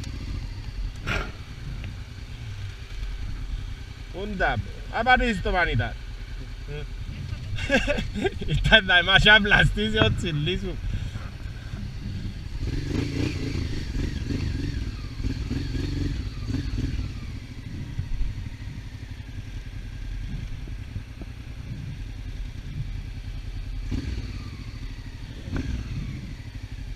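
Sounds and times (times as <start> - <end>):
motorcycle engine running: 0.0 - 26.9
motorcycle clatter over rough ground: 5.4 - 26.9.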